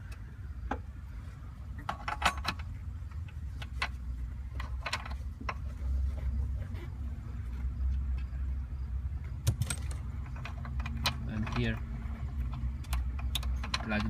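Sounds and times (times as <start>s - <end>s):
steady low rumble: 0.0s - 14.0s
plastic parts clicking and rattling: 9.5s - 14.0s.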